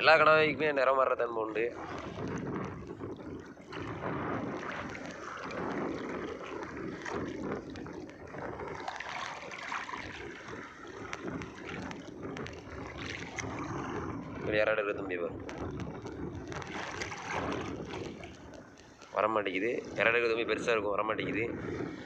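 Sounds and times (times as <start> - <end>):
sea water splashing: 0.0 - 22.0
wind on microphone: 0.0 - 22.0
faint clicks: 1.8 - 14.5, 15.4 - 19.3.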